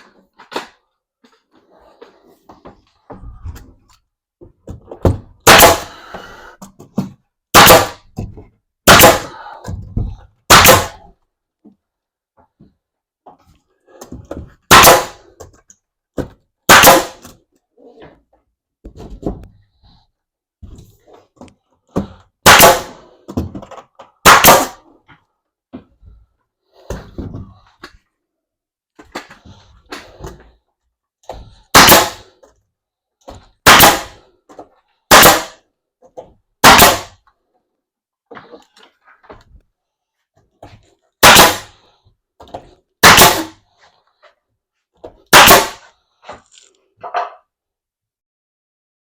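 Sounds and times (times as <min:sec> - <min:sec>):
nail gun firing with hiss: 0:07.6 - 0:08.0, 0:08.9 - 0:09.3, 0:16.7 - 0:17.2, 0:22.5 - 0:22.9, 0:24.2 - 0:24.7, 0:31.8 - 0:32.2, 0:33.6 - 0:34.2, 0:35.1 - 0:35.5, 0:36.6 - 0:37.1, 0:41.2 - 0:41.7, 0:43.0 - 0:43.5, 0:45.3 - 0:45.8.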